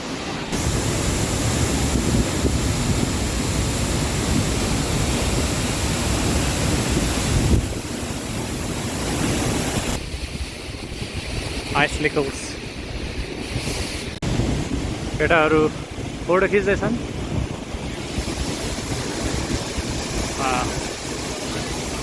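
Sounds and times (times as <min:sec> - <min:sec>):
waterfall roaring: 0:00.0 - 0:10.0, 0:14.5 - 0:22.0
wind buffeting microphone: 0:00.5 - 0:22.0.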